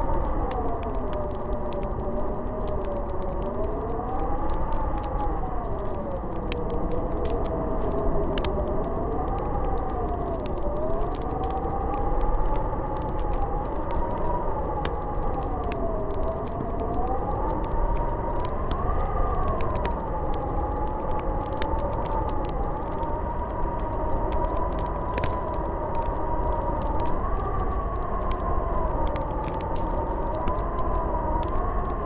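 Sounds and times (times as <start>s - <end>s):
wind howling: 0.0s - 32.0s.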